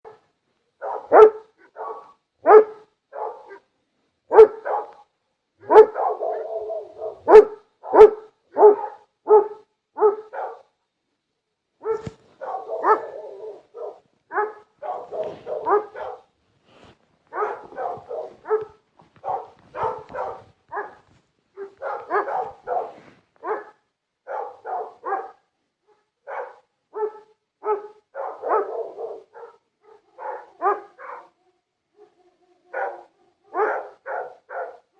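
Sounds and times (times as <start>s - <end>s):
dogs barking sharply: 0.1s - 3.7s, 4.3s - 10.7s, 11.8s - 16.3s, 17.3s - 31.4s, 32.8s - 34.9s.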